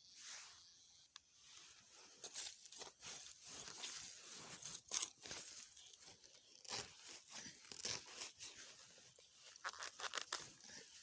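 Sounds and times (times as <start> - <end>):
plant material rustling and tearing: 2.3 - 11.0.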